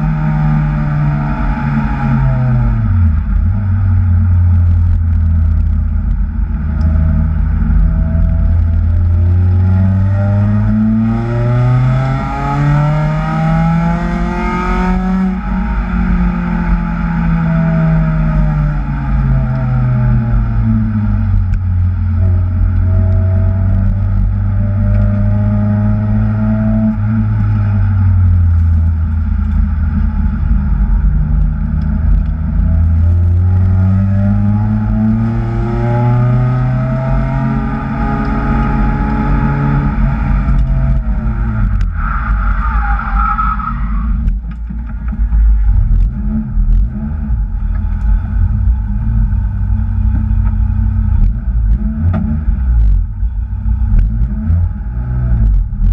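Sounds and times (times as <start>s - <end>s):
car engine revving: 0.0s - 55.9s
high-pitched squeal: 41.6s - 44.3s.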